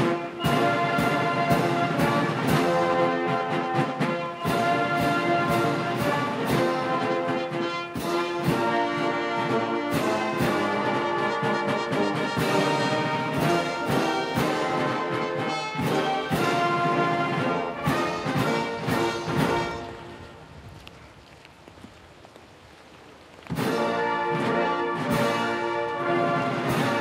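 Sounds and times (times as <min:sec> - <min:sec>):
drum and cymbal strikes: 0:00.0 - 0:19.7
military brass band playing: 0:00.0 - 0:20.4, 0:23.5 - 0:27.0.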